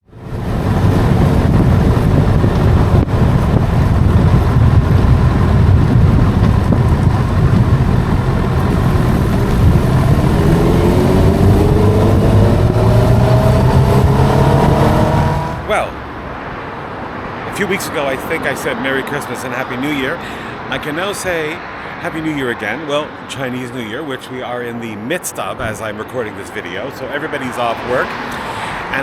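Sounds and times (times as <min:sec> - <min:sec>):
road traffic rumble: 0:00.0 - 0:29.0
vehicle engine accelerating: 0:00.1 - 0:16.2.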